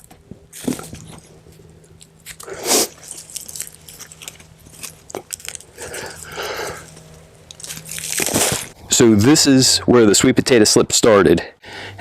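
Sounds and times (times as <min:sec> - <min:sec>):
crunching and rustling of soil: 0:02.0 - 0:08.8.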